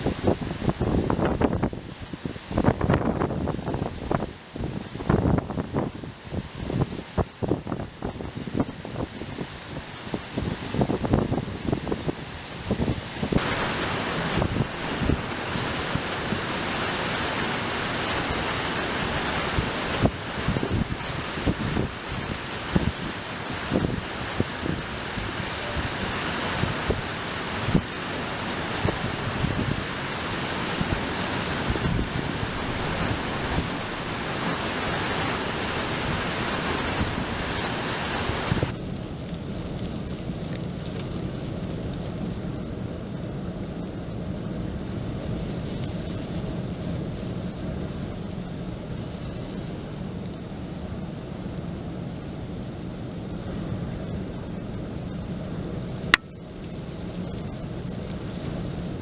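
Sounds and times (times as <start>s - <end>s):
rain: 0.0s - 59.0s
wind rushing: 10.4s - 27.9s, 28.8s - 38.8s.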